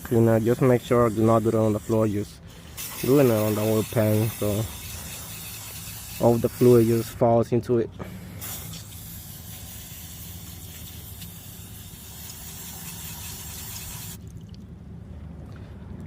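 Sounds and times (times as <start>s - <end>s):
low steady hum: 0.0s - 16.0s
aerosol spray hissing: 0.2s - 7.2s, 8.4s - 14.2s.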